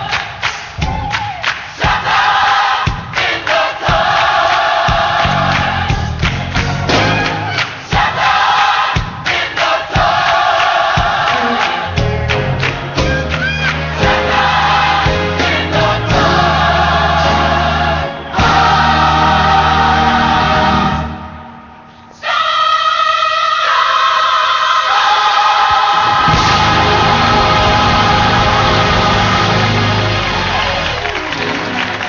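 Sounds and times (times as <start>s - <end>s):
gospel choir singing: 0.0s - 0.7s, 1.6s - 32.0s.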